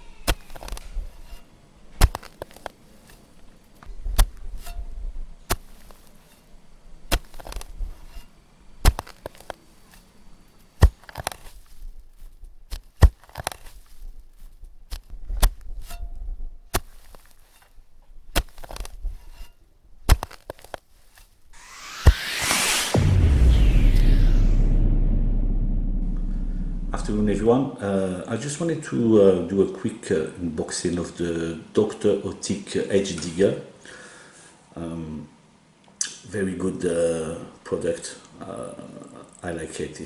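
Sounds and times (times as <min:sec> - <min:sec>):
sharp knocks or chops: 0:07.1 - 0:09.5
low rumbling noise: 0:21.6 - 0:27.5.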